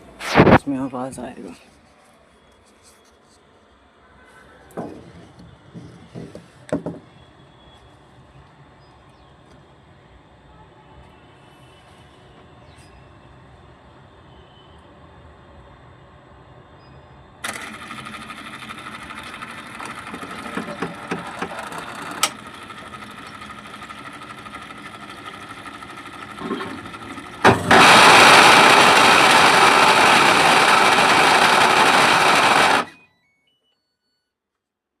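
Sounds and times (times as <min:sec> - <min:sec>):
washing machine spin cycle: 0:17.4 - 0:33.0.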